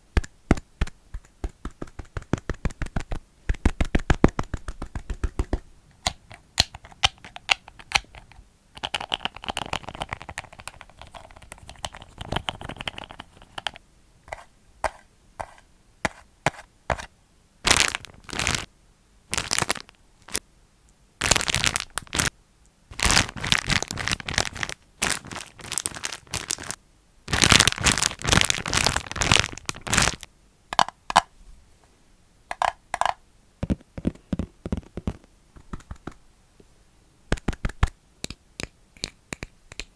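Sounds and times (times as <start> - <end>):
plastic crinkling and crackling: 17.7 - 18.7, 19.3 - 20.4, 21.2 - 22.3, 22.9 - 30.3.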